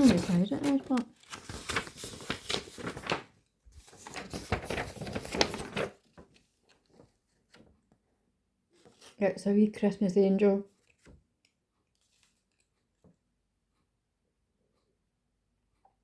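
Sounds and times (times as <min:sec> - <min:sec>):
packaging crinkling and tapping: 0:00.0 - 0:07.6.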